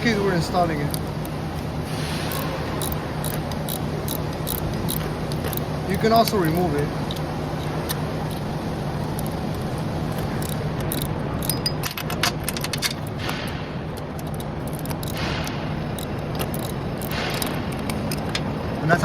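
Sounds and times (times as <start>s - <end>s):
steady low hum: 0.0s - 19.0s
metal scrapes: 1.8s - 3.0s
wrench metal clicks and clinks: 2.3s - 18.5s.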